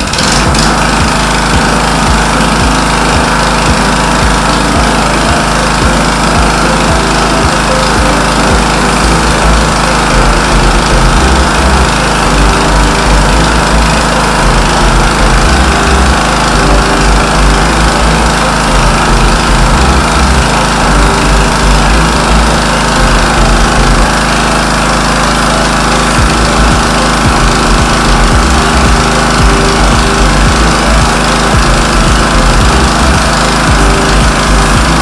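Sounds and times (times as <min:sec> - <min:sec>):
petrol generator running: 0:00.0 - 0:35.0.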